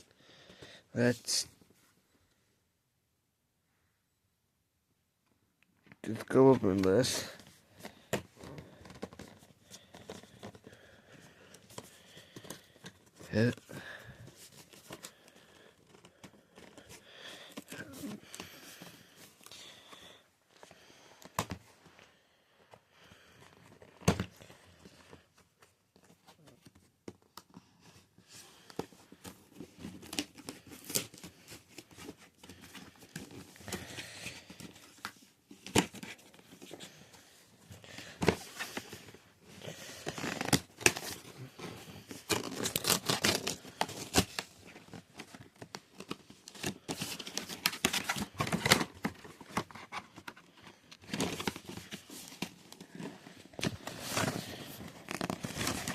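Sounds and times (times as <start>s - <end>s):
packaging tearing and crinkling: 41.9s - 44.5s, 52.8s - 55.9s.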